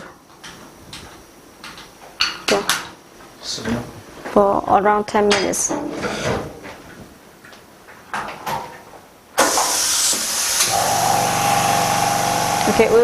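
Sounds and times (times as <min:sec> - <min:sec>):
loud steady hiss: 0:09.3 - 0:13.0
steady whine: 0:10.3 - 0:13.0
machine hum: 0:10.4 - 0:13.0.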